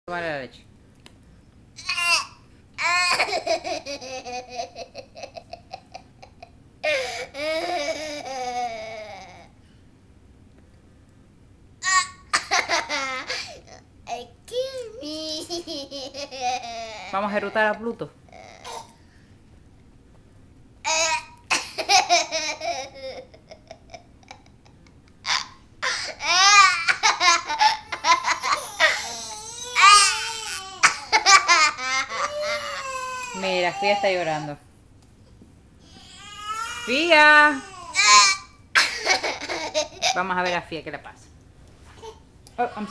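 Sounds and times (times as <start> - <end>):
baby laughing: 2.8 - 9.5, 11.8 - 14.2, 15.1 - 17.1, 20.9 - 33.6, 37.9 - 40.2.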